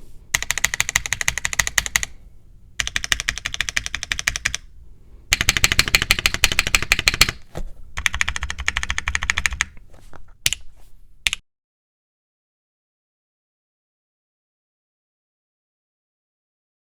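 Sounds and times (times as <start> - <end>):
mechanical keyboard typing: 0.3 - 2.2, 2.8 - 4.7, 5.3 - 9.8, 10.4 - 11.4.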